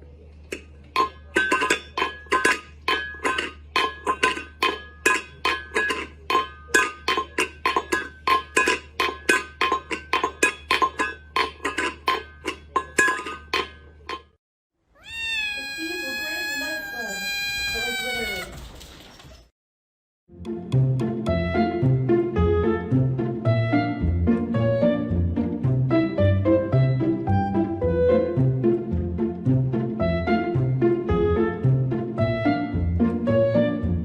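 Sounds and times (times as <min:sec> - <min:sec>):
cat meowing: 0:15.0 - 0:18.6
plucked notes: 0:20.4 - 0:34.0.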